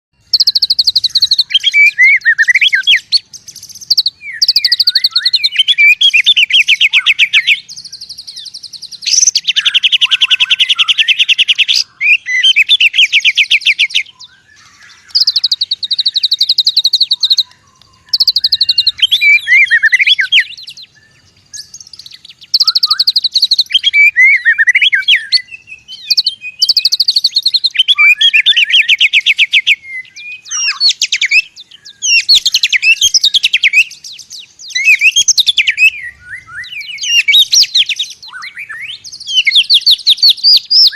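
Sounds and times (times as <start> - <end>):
bird singing buzzing rattles: 0.2 - 40.9
bird whistling warbled notes: 0.3 - 40.9.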